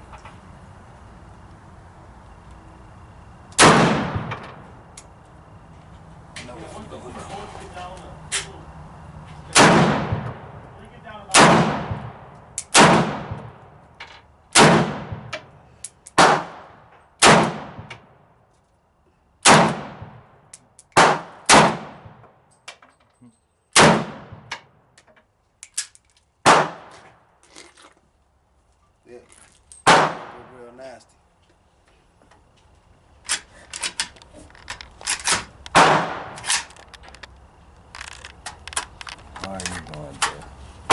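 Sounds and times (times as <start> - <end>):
pistol shots with echo: 3.6 - 4.4, 9.5 - 10.6, 11.3 - 13.6, 14.6 - 15.4, 16.2 - 18.0, 19.4 - 20.2, 21.0 - 22.2, 23.8 - 24.5, 26.4 - 26.9, 29.8 - 30.5, 35.7 - 36.4
gunshot bang: 3.6 - 4.5, 9.5 - 10.5, 11.3 - 13.6, 14.6 - 15.4, 16.2 - 18.0, 19.4 - 20.2, 21.0 - 22.2, 23.8 - 24.5, 26.4 - 27.0, 29.8 - 30.5, 35.8 - 36.4
firearm handling clicks: 20.5 - 21.0, 24.5 - 26.3, 33.2 - 40.4.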